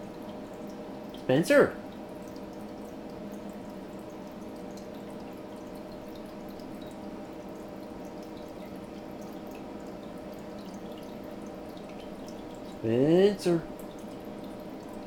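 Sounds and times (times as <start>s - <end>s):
water dripping in a sink: 0.0s - 15.0s
steady low hum: 12.7s - 14.1s.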